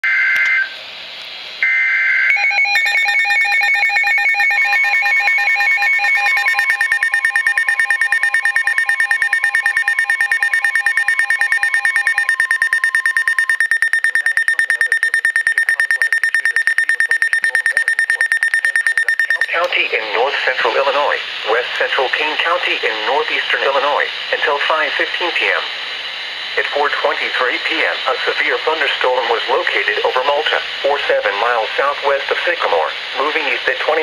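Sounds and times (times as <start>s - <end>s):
long steady warning tone: 1.6s - 19.7s
weather radio alarm beeps: 1.6s - 19.7s
fast even beeping: 2.8s - 19.7s
warbling data bursts: 5.9s - 19.6s.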